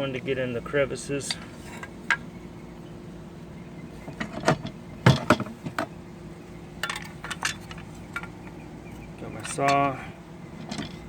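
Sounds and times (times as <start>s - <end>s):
garden tools knocking and clattering: 4.1s - 5.9s, 6.8s - 8.6s, 9.2s - 11.0s.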